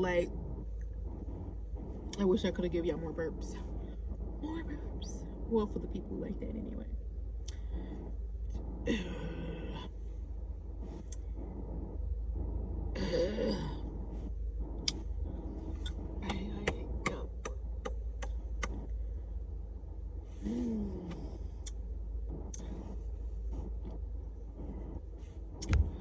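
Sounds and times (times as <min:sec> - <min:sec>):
steady low hum: 0:00.0 - 0:26.0
person trying to burp: 0:13.0 - 0:13.8.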